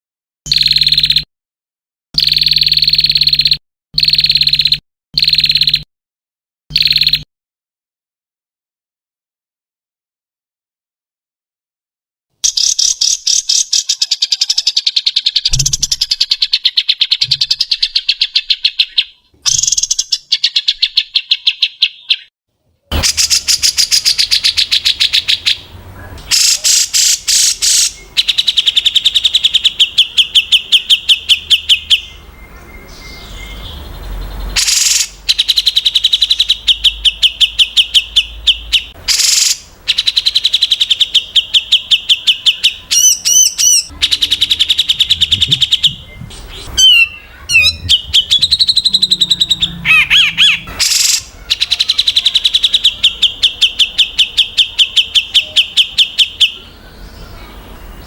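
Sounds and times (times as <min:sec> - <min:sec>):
songbird singing: 0:00.5 - 0:01.3, 0:02.2 - 0:05.9, 0:06.7 - 0:07.3, 0:12.4 - 0:58.0
harsh bird notes: 0:22.9 - 0:58.0.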